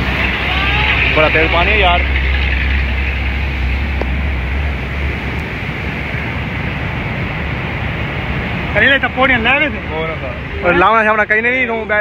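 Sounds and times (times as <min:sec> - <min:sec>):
low rumble: 0:00.0 - 0:08.8
floodwater rushing: 0:00.0 - 0:12.0.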